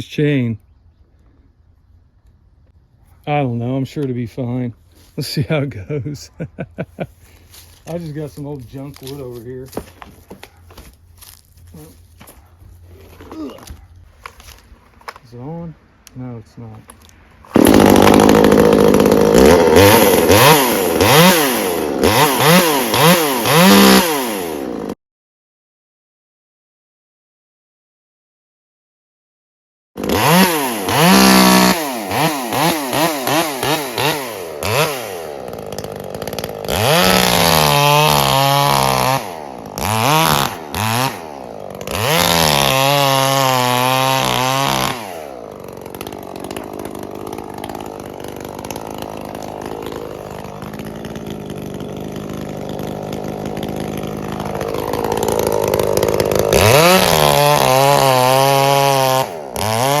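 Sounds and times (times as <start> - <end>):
chainsaw revving: 17.5 - 25.0, 30.0 - 60.0.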